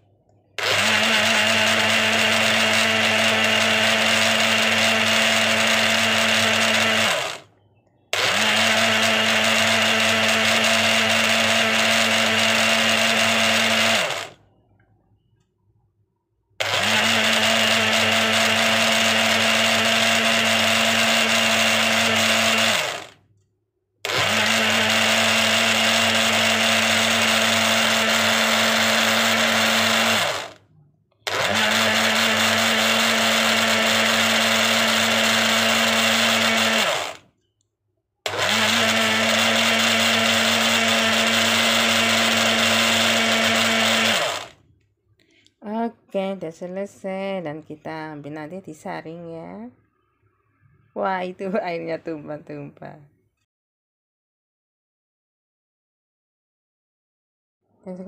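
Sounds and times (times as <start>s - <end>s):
blender motor running: 0.6s - 7.5s, 8.2s - 14.4s, 16.6s - 23.2s, 24.0s - 30.6s, 31.3s - 37.2s, 38.3s - 44.6s.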